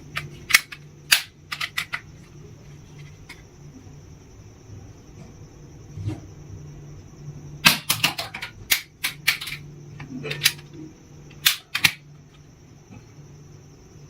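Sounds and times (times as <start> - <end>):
plastic toy guns clicking: 0.5 - 2.0, 7.7 - 9.6, 11.4 - 12.0.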